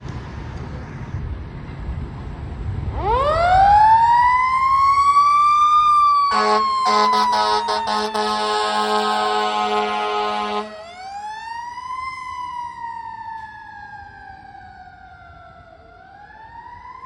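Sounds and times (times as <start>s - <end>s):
air horn blasts: 6.3s - 11.0s.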